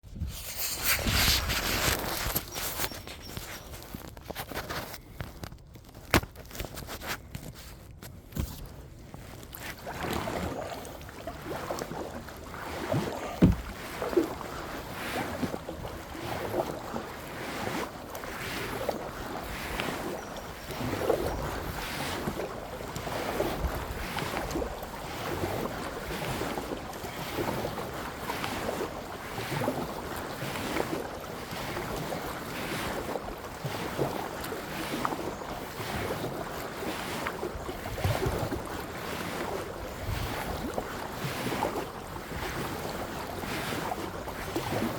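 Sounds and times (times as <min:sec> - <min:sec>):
paddle strokes splashing water: 0:00.2 - 0:44.9
wind buffeting microphone: 0:39.7 - 0:40.8.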